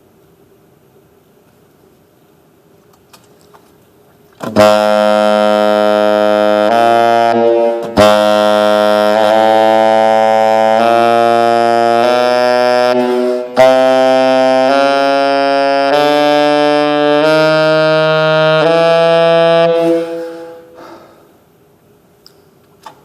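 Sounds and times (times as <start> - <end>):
saxophone solo: 4.4 - 20.9.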